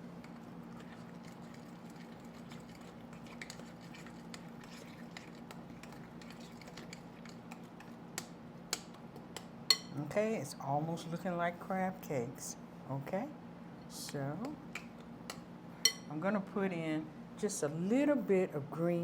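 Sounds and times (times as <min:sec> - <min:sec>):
spoon stirring wet mixture in bowl: 0:00.0 - 0:10.0, 0:14.1 - 0:16.1
steady low hum: 0:00.0 - 0:19.0.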